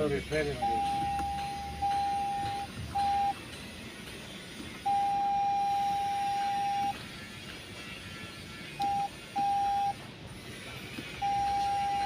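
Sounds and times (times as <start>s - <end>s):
electronic beeper long beeps: 0.6s - 3.4s, 4.9s - 7.0s.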